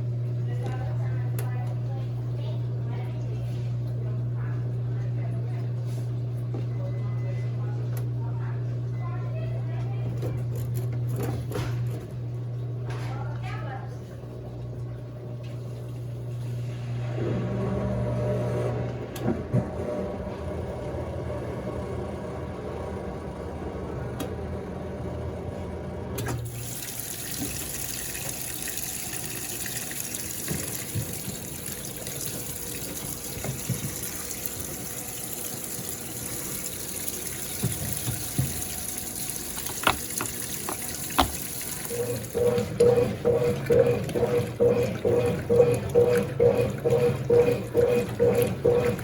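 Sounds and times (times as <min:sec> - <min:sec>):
drain pump hum: 0:00.0 - 0:49.0
water rushing into tub: 0:26.3 - 0:49.0.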